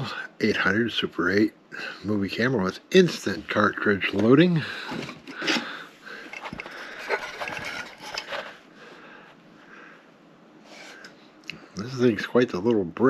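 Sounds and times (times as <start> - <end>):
rustling of unpacking: 4.8 - 8.6.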